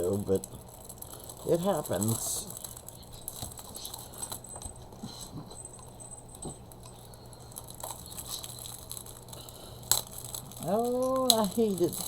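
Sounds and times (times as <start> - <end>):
paper rustling: 7.5 - 12.0.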